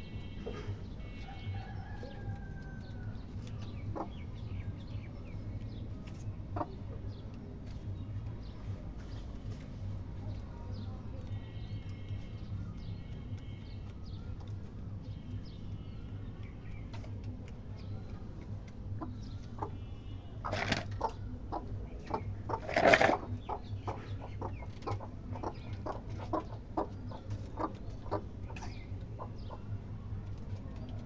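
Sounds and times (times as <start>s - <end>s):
chickens clucking: 0.0s - 7.8s, 16.8s - 31.0s.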